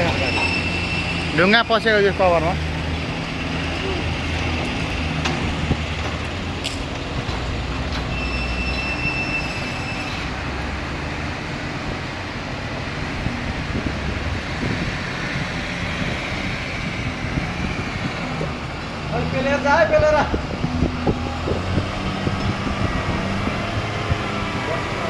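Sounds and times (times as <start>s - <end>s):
high-pitched metallic squeal: 0.0s - 4.8s, 8.1s - 10.5s
excavator diesel engine running: 0.0s - 25.0s.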